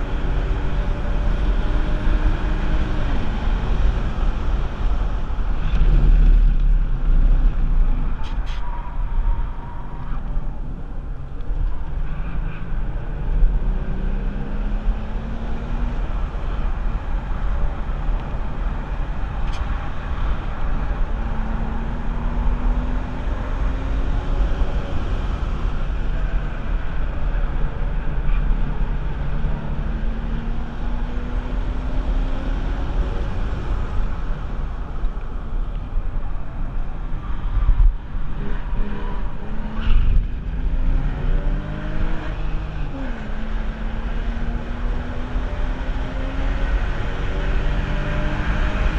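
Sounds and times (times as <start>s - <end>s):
car engine accelerating: 37.1s - 48.9s.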